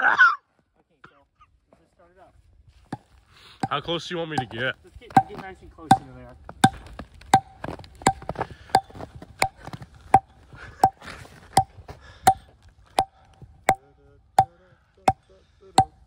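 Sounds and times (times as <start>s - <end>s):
firewood being chopped: 2.9s - 13.8s, 15.8s - 16.0s.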